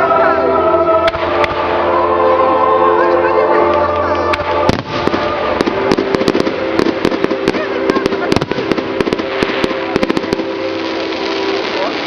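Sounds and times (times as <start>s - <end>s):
fireworks bangs and crackles: 4.3s - 12.0s.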